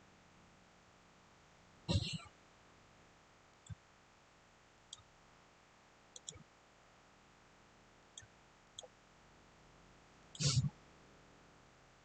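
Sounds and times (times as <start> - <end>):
computer mouse clicks: 6.2 - 6.4.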